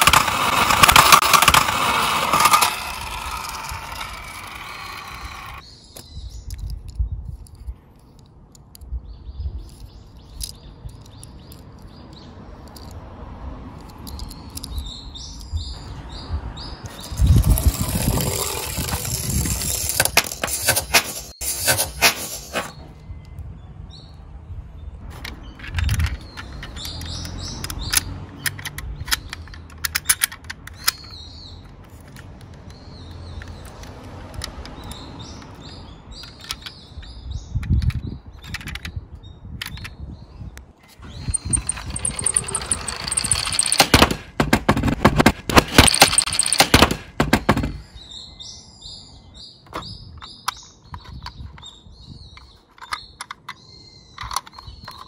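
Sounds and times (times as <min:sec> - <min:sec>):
toy cars rolling rumble: 0:00.0 - 0:05.6, 0:13.8 - 0:15.5, 0:16.8 - 0:22.8, 0:25.1 - 0:39.0, 0:41.0 - 0:47.8
short high chirping: 0:41.0 - 0:44.0
clicks and knocks: 0:41.2 - 0:47.8.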